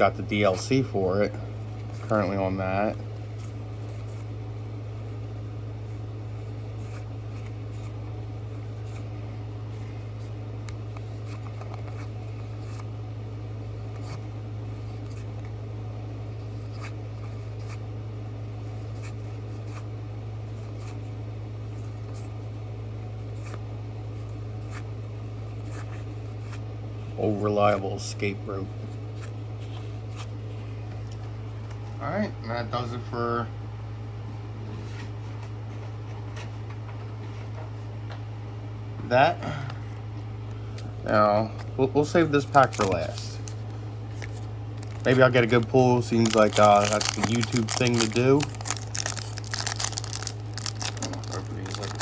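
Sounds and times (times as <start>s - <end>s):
trading cards rustling: 0.0s - 13.0s, 40.6s - 52.0s
steady low hum: 0.0s - 52.0s.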